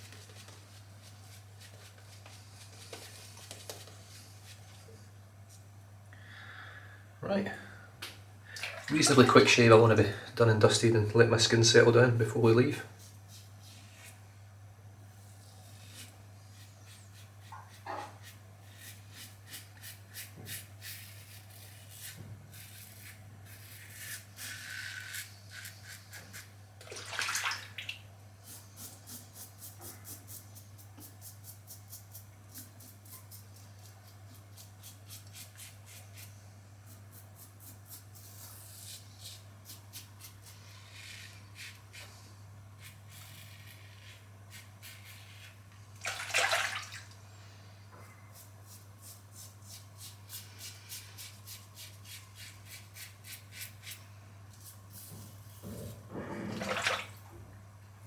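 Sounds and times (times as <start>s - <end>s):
running water: 8.5s - 10.0s, 26.8s - 28.0s, 46.0s - 47.2s, 56.1s - 57.6s.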